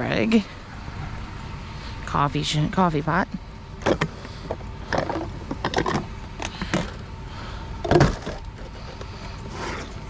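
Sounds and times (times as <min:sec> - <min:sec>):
steady low rumble: 0:00.0 - 0:10.0
junk knocking and rustling: 0:03.7 - 0:10.0.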